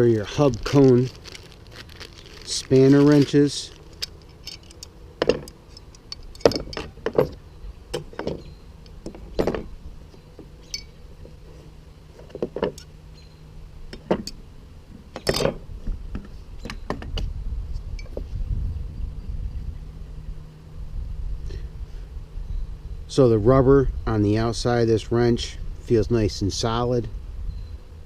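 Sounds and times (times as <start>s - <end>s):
metal spanners clinking: 2.5s - 7.4s.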